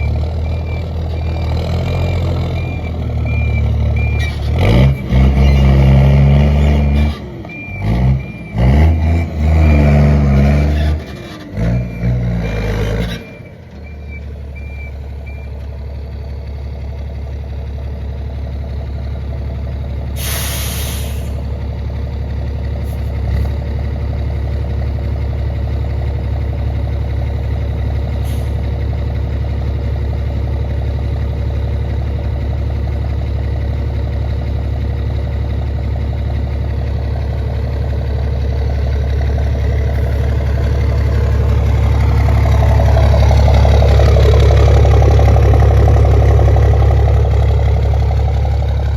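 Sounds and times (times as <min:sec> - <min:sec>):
reversing beeper: 0:00.0 - 0:15.7
diesel truck engine revving: 0:00.0 - 0:17.1, 0:35.9 - 0:48.9
air brake hiss: 0:20.2 - 0:21.4, 0:28.2 - 0:28.6.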